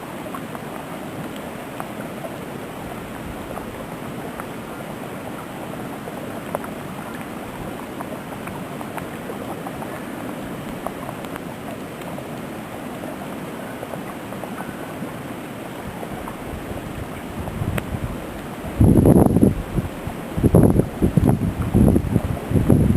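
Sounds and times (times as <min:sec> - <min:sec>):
wind blowing in snowstorm: 0:15.8 - 0:22.9
wind buffeting microphone: 0:15.8 - 0:22.9.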